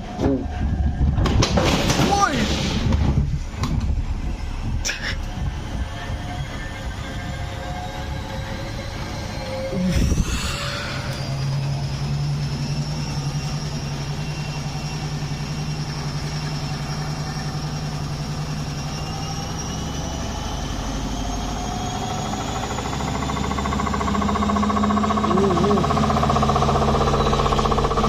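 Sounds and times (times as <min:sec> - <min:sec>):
washing machine hum: 0:00.0 - 0:28.0
motor whine rising in pitch: 0:03.8 - 0:28.0.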